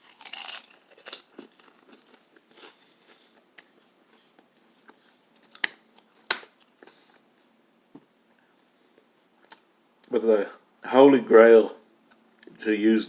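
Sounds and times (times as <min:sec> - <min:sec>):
person chewing crunchy snack: 0:00.0 - 0:03.8.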